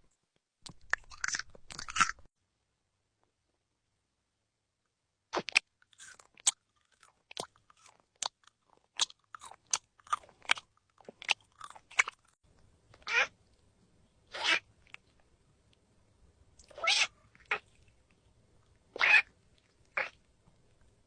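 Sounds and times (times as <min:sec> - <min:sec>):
crunchy fruit chewing: 0:00.7 - 0:02.3, 0:05.4 - 0:12.4.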